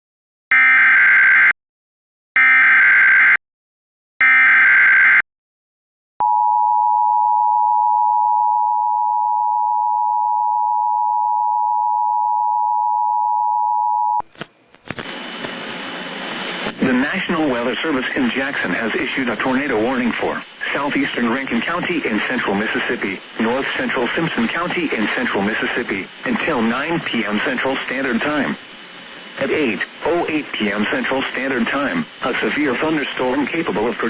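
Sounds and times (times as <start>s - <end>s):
radio hiss: 14.3s - 34.0s.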